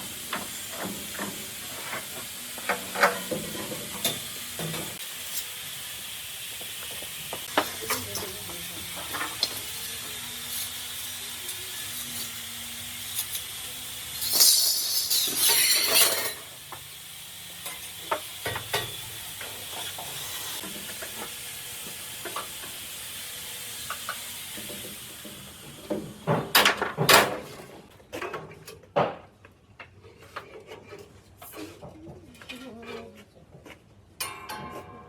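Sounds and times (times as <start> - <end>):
steady hiss: 0.0 - 26.2.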